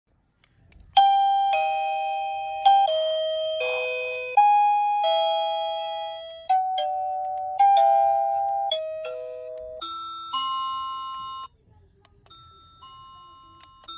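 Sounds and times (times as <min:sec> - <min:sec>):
doorbell chime melody: 0:01.0 - 0:11.5.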